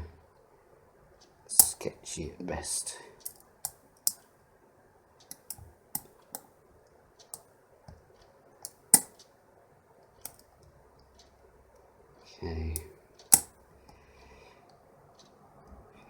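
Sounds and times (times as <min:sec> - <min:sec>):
lock pins clicking: 0:03.2 - 0:04.2, 0:05.3 - 0:06.5, 0:08.6 - 0:09.2, 0:12.8 - 0:13.6.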